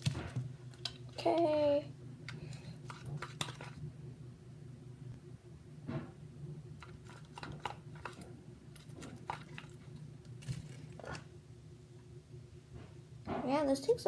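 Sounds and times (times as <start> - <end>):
faint steady hum: 0.0 - 14.0
sticky slime squelches: 6.8 - 11.3.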